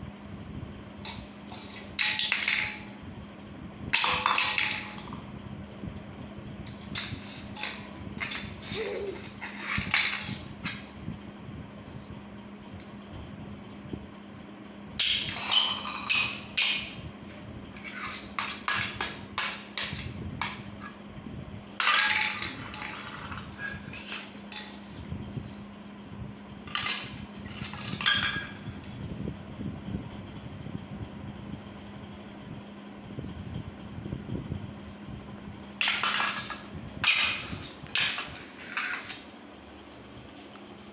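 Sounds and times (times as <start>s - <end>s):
steady low hum: 0.0s - 40.9s
child banging household objects: 1.0s - 3.0s, 4.0s - 5.3s, 6.7s - 10.9s, 15.0s - 21.0s, 21.7s - 25.6s, 26.7s - 29.0s, 35.8s - 39.2s.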